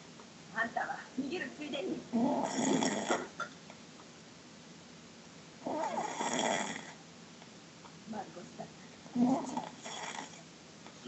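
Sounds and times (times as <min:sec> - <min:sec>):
person snoring loudly: 0:02.2 - 0:03.3, 0:05.6 - 0:07.0, 0:09.2 - 0:10.4.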